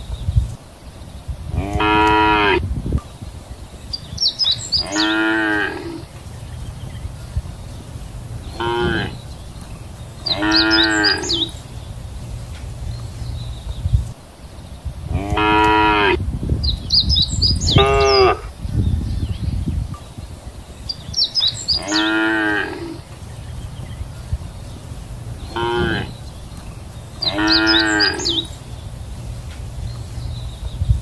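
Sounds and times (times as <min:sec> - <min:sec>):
cows mooing: 0:01.5 - 0:02.6, 0:04.8 - 0:06.1, 0:08.5 - 0:09.2, 0:10.2 - 0:11.6, 0:15.1 - 0:16.2, 0:17.7 - 0:18.5, 0:21.8 - 0:23.1, 0:25.5 - 0:26.2, 0:27.2 - 0:28.5
high chirps: 0:01.7 - 0:14.3, 0:15.2 - 0:31.0.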